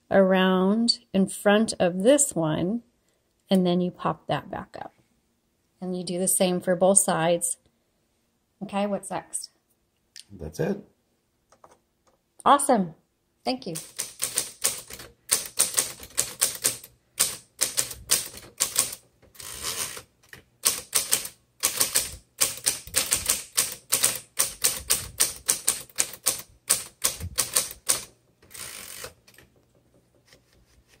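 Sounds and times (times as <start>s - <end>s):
typewriter key strikes: 13.8s - 19.0s, 20.6s - 28.1s
typewriter rasping runs: 13.8s - 29.4s.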